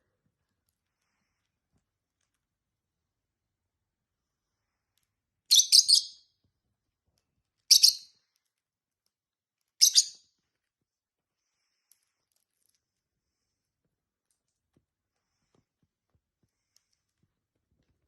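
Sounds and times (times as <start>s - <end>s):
lovebird chirping: 5.5s - 6.2s, 7.7s - 8.1s, 9.8s - 10.2s.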